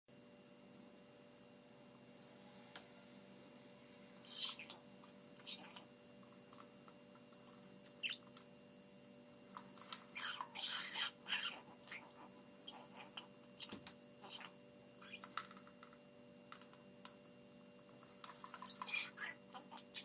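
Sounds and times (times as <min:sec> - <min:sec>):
budgerigar scratchy calls: 0:04.2 - 0:04.8, 0:08.0 - 0:08.2, 0:10.2 - 0:15.2, 0:18.5 - 0:20.0.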